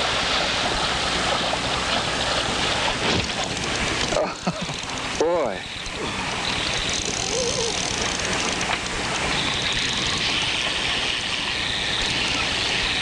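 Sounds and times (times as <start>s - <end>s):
boat motor running: 0.0s - 13.0s
water: 0.0s - 13.0s
high hiss: 3.6s - 13.0s.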